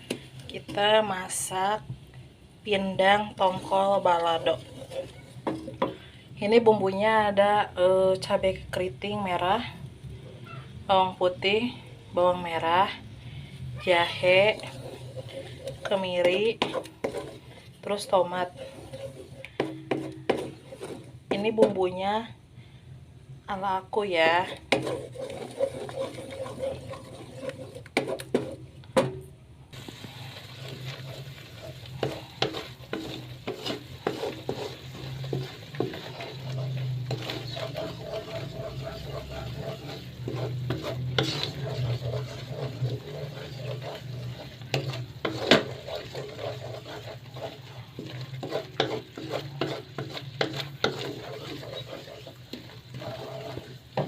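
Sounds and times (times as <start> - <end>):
spice paste sizzling in pan: 14.1 - 21.5, 24.4 - 28.6, 29.7 - 54.0.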